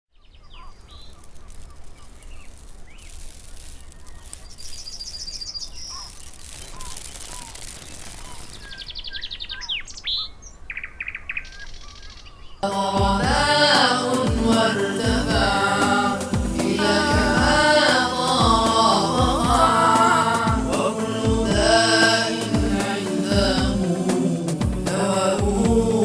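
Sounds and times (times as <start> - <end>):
birds chirping and trilling: 0.1 - 12.6
short whistled bird calls: 0.2 - 12.6.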